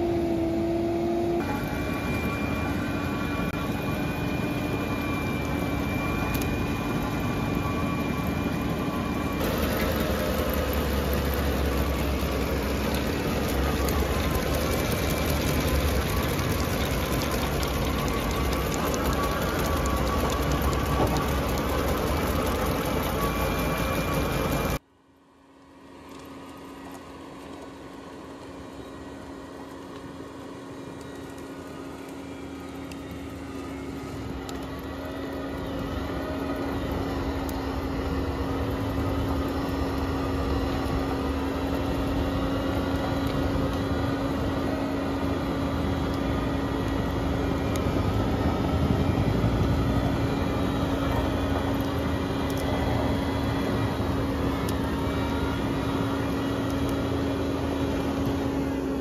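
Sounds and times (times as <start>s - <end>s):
diesel engine under load: 0.0s - 24.8s
rotor whine grinding stumps: 0.0s - 24.8s.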